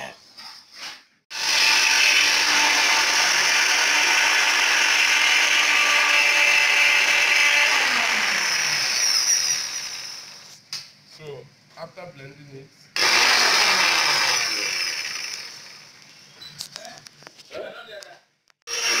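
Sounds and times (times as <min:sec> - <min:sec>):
electric blender running: 0:01.3 - 0:10.4, 0:13.0 - 0:16.0, 0:18.7 - 0:19.0.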